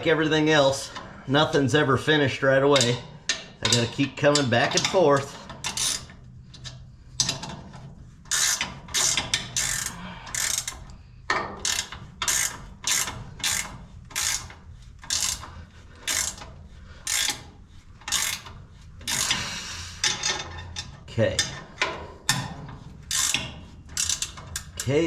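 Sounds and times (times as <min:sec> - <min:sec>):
ratchet wrench clicking: 0:02.8 - 0:07.6, 0:08.3 - 0:20.9, 0:23.1 - 0:25.0.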